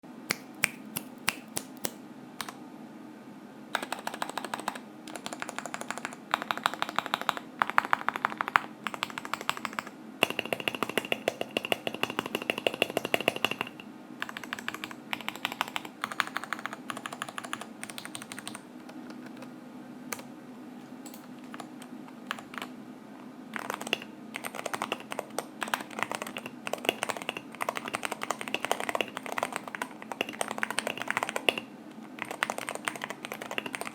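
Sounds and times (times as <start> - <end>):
typing on mechanical keyboard: 3.8 - 19.5, 21.1 - 22.7, 23.6 - 33.9.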